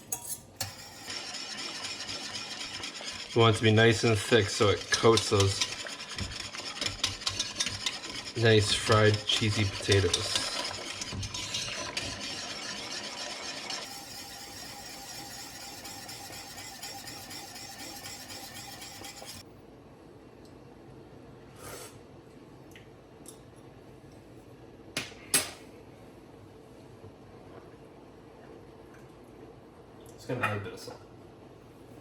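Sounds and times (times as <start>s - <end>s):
whisk scraping a pot: 0.0s - 19.4s
utensil clinking against pot: 4.0s - 19.4s.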